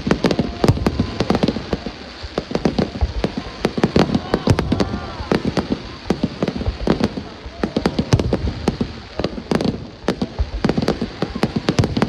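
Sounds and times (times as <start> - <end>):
fireworks bursting and crackling: 0.0 - 12.0.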